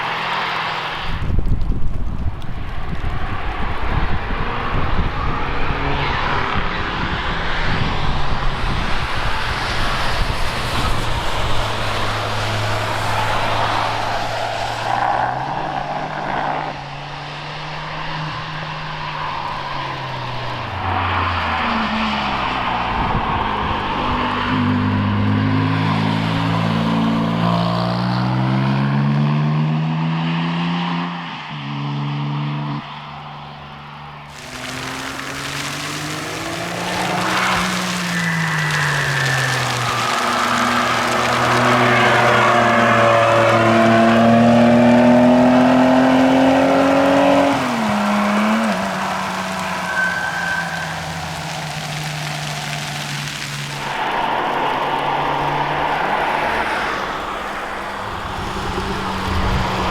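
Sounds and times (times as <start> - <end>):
cars driving past: 0.0 - 1.4, 2.8 - 59.9
tyre and wind noise: 0.0 - 15.5, 19.0 - 27.7, 34.0 - 59.9
engine revving through gears: 34.2 - 59.9.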